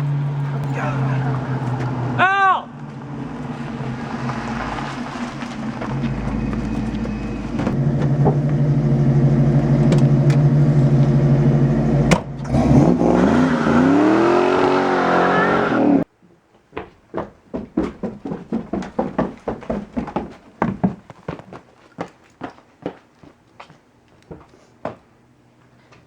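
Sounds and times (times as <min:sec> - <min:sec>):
wavering whine: 0:00.0 - 0:12.1
vehicle engine running: 0:00.0 - 0:15.3.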